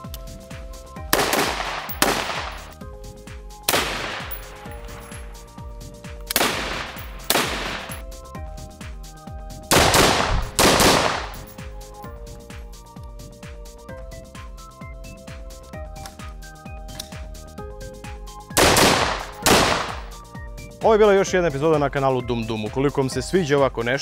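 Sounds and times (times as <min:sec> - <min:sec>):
background music: 0:00.0 - 0:24.0
rifle shots: 0:01.1 - 0:02.8, 0:03.7 - 0:05.0, 0:06.3 - 0:08.0, 0:09.7 - 0:11.5, 0:18.6 - 0:20.1.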